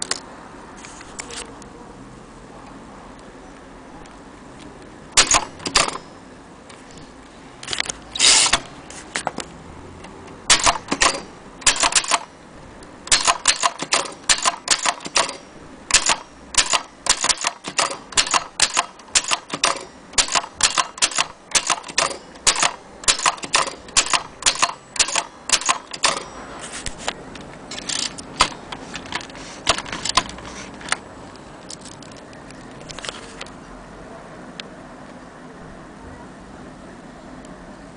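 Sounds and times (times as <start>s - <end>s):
typewriter key clacks: 5.2s - 6.0s, 10.5s - 12.3s, 13.1s - 26.2s.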